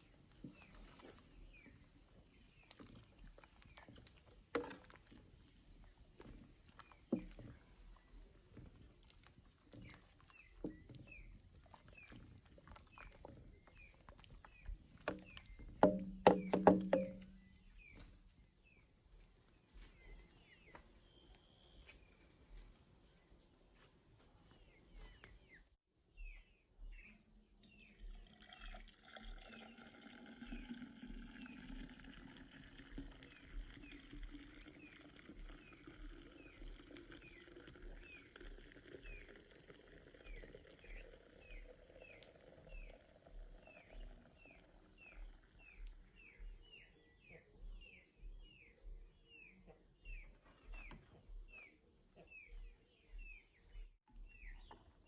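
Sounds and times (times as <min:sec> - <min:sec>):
bird chirping: 0:12.9 - 0:18.1, 0:40.1 - 0:55.0
liquid pouring into a container: 0:27.7 - 0:45.6.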